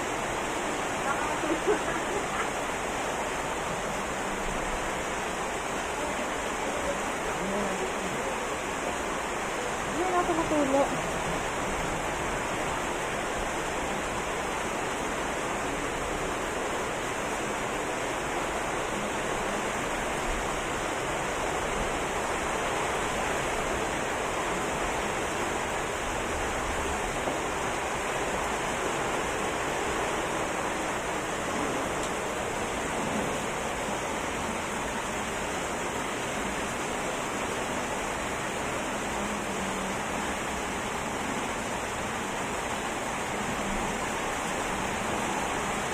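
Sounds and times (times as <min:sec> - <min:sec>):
rain pouring: 0:00.0 - 0:45.9.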